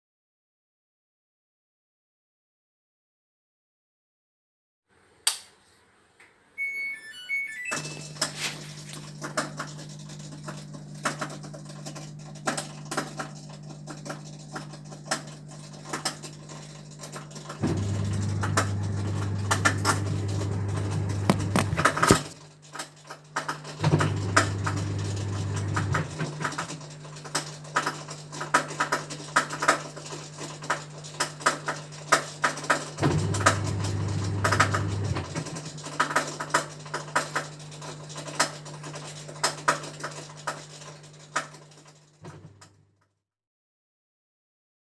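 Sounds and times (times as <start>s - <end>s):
washing machine motor humming: 6.6s - 42.7s
clicks and rattles: 8.1s - 17.6s, 21.2s - 24.8s, 34.4s - 42.8s.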